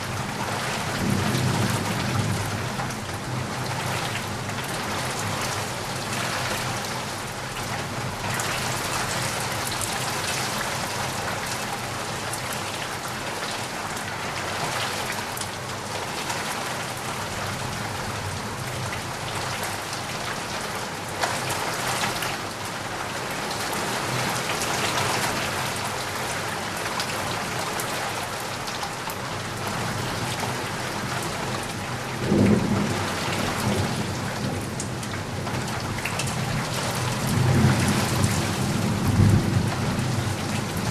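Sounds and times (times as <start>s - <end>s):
steady rain falling: 0.0s - 40.9s
low rumble of thunder: 0.2s - 5.4s, 32.0s - 40.9s.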